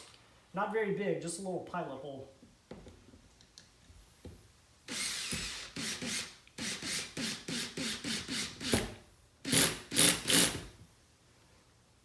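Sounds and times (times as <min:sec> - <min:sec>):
power drill driving screw: 0:04.9 - 0:10.7.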